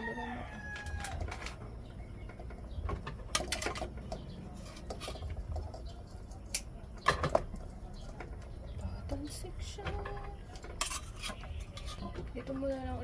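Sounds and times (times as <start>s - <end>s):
utensils clinking against dishes: 3.1s - 8.4s, 9.6s - 13.0s.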